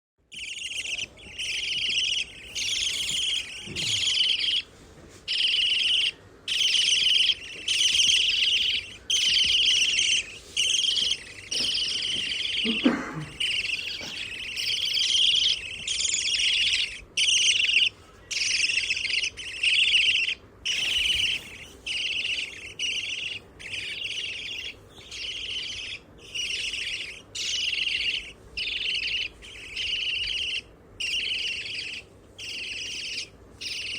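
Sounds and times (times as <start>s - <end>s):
budgerigars chattering and chirping: 0.3s - 33.9s.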